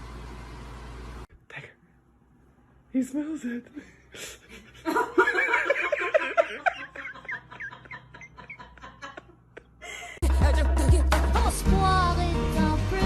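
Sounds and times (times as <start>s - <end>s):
high-pitched giggling laughter: 4.8s - 10.2s.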